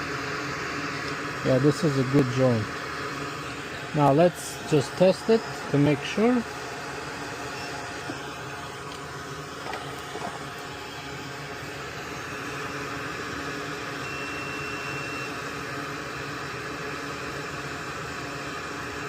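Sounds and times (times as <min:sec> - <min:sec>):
fan-like hiss: 0:00.0 - 0:14.0
multimeter beep: 0:14.0 - 0:15.4.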